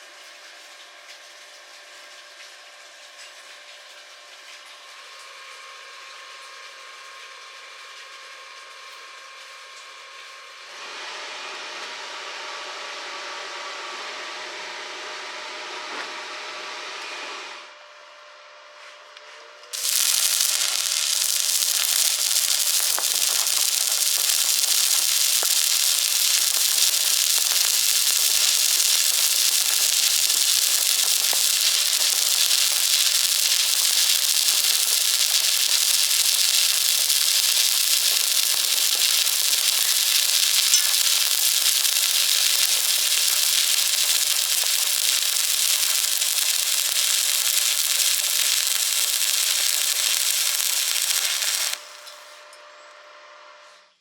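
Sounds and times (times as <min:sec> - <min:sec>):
welding arc crackling sizzle: 0:19.7 - 0:53.2.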